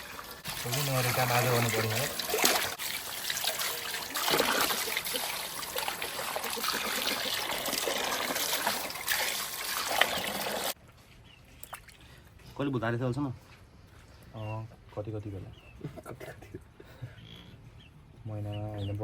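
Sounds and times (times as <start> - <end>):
water trickling and splashing: 0.0 - 12.6.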